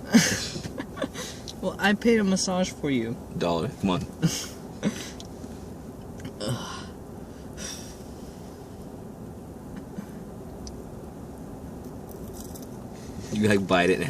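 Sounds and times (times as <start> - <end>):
person breathing: 6.5 - 8.7.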